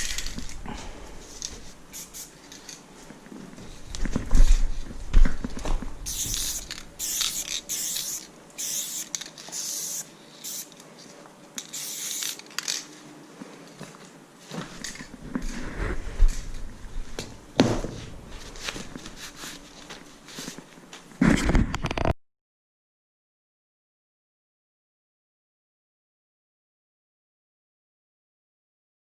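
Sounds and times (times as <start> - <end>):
spray can hissing bursts: 1.9 - 2.3, 6.0 - 10.7, 11.6 - 12.5.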